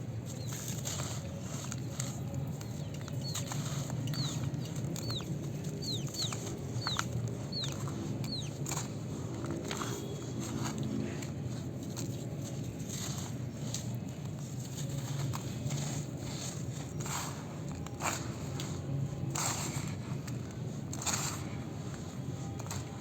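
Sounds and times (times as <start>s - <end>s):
gritty dirt crumbling: 0.0s - 23.0s
steady low hum: 0.0s - 23.0s
bird chirping: 0.3s - 8.9s.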